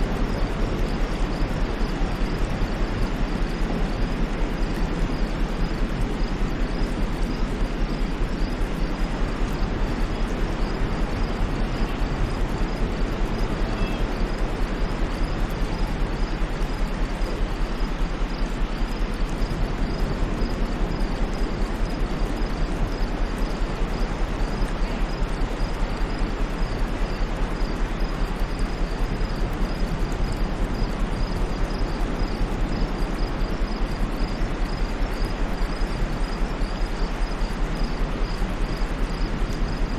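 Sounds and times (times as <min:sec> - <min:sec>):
steady white noise: 0:00.0 - 0:39.9
high insect chirp: 0:10.1 - 0:39.9.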